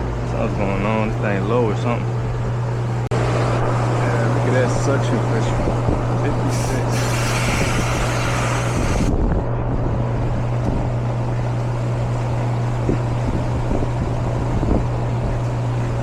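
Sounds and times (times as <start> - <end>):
compressor low hum: 0.0 - 16.0
condenser fan rushing: 0.0 - 16.0
bright hiss: 6.5 - 9.1.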